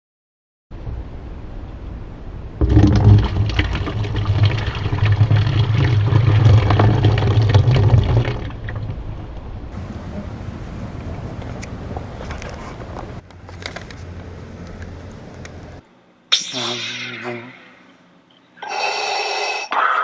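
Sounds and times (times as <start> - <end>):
liquid pouring into a bucket: 2.6 - 8.9.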